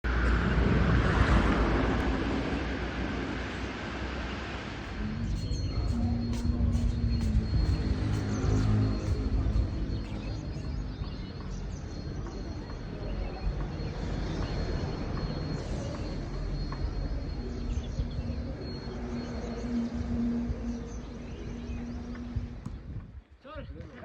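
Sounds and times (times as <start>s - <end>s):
low steady hum: 0.0s - 23.2s
steady rumbling noise: 0.0s - 23.2s
faint high steady tone: 4.9s - 22.5s.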